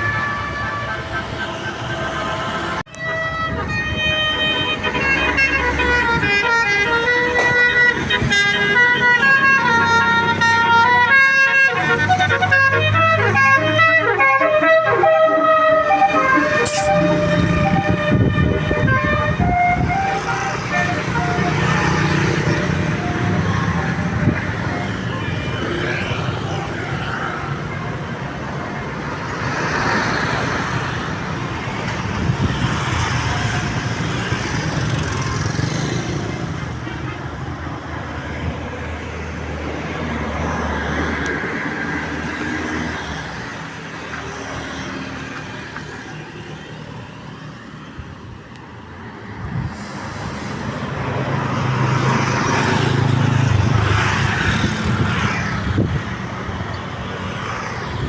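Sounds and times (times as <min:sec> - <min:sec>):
motor vehicles passing: 0:00.0 - 0:46.9, 0:48.9 - 0:58.0.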